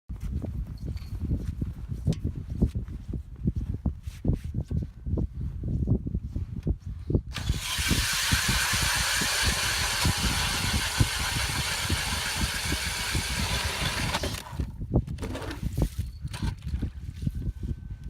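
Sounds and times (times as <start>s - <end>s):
ice auger drilling into ice: 7.3s - 14.7s.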